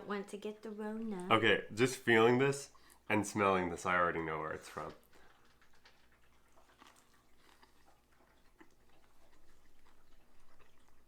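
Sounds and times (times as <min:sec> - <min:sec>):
person chewing food: 0:04.9 - 0:11.0.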